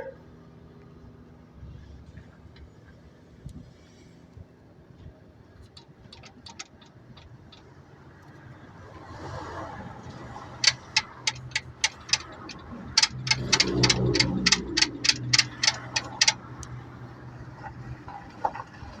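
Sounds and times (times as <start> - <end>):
suspension clicking sharply: 5.6 - 7.7, 10.0 - 16.8.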